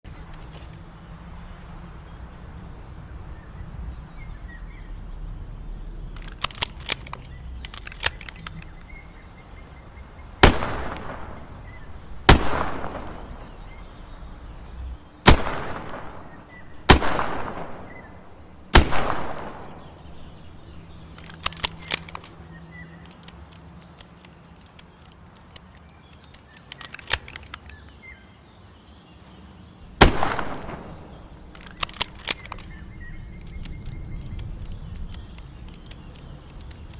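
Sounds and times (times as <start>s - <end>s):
quick metallic clicks: 6.1s - 9.0s, 10.4s - 28.0s, 30.0s - 36.9s
revolver gunshots with echo: 10.4s - 14.2s, 15.2s - 20.7s, 30.0s - 33.1s.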